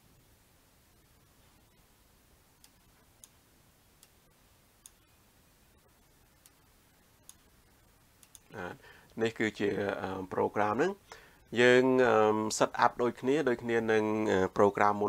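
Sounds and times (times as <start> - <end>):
computer mouse clicks: 4.8 - 5.0, 6.4 - 6.6, 7.2 - 7.5, 8.2 - 8.5.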